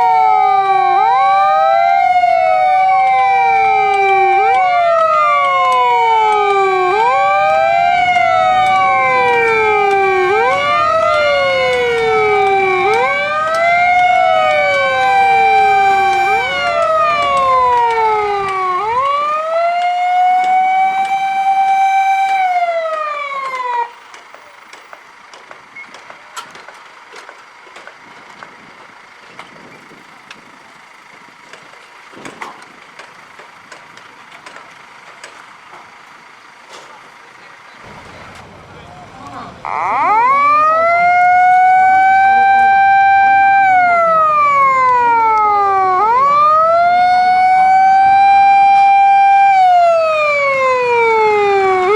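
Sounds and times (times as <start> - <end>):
fire engine sirens wailing: 0.0 - 51.9
low engine rumble: 0.0 - 51.9
scattered clicks: 3.0 - 15.2, 16.1 - 28.5.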